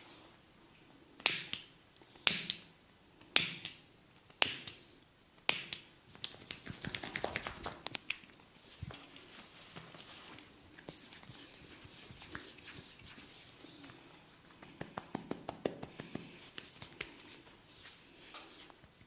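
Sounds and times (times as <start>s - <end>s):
hands snapping: 1.2s - 2.6s, 3.4s - 4.8s, 5.4s - 8.3s, 14.6s - 17.2s.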